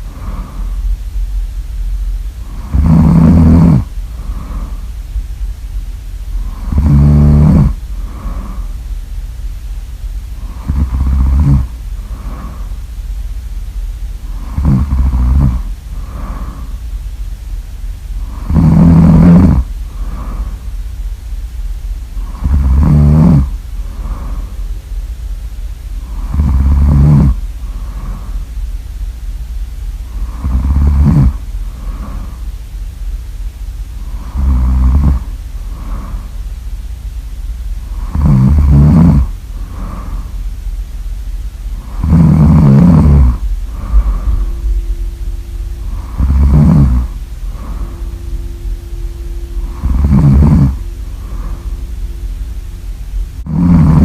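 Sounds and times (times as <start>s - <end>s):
loud snoring: 0.0s - 0.8s, 2.4s - 4.9s, 6.4s - 8.7s, 10.4s - 12.8s, 14.3s - 16.8s, 18.2s - 20.6s, 22.2s - 24.5s, 26.0s - 28.4s, 30.1s - 32.4s, 34.0s - 36.4s, 37.9s - 40.4s, 41.7s - 45.2s, 45.8s - 48.9s, 49.5s - 52.7s, 53.4s - 54.0s
low steady hum: 0.0s - 54.0s.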